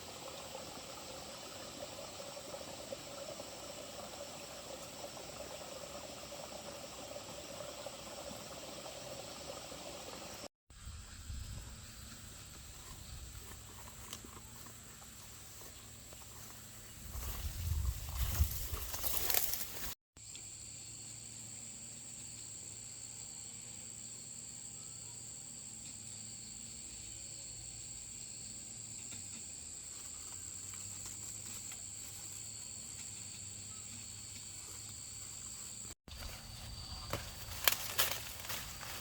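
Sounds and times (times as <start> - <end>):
insects droning: 0.0 - 39.0.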